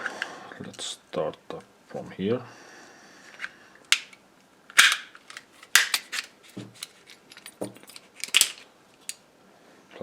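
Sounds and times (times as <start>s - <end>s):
plastic housing cracking: 3.9s - 7.0s, 8.2s - 9.2s.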